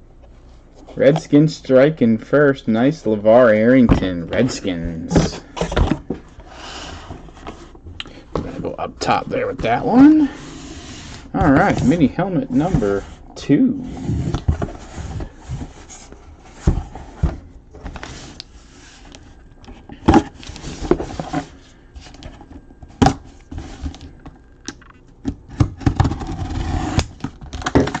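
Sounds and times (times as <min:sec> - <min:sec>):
cardboard box scraping and rustling: 0:10.0 - 0:13.2.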